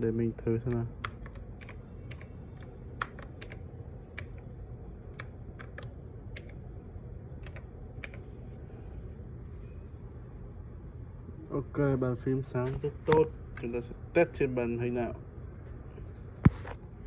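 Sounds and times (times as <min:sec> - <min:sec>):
steady low hum: 0:00.0 - 0:17.0
keyboard keys clicking: 0:00.6 - 0:04.4, 0:05.2 - 0:06.6, 0:07.4 - 0:08.2.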